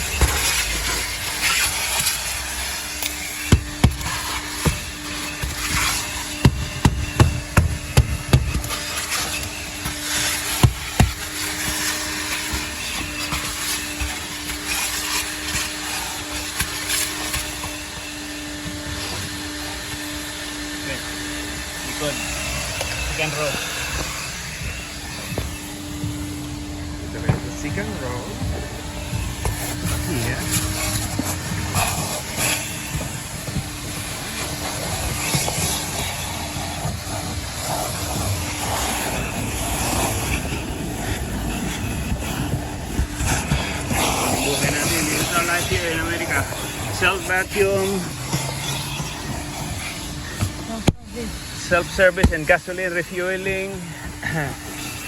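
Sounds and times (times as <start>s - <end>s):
vacuum cleaner humming: 0.0s - 55.0s
vacuum nozzle knocking on surfaces: 3.4s - 14.8s, 52.1s - 52.6s.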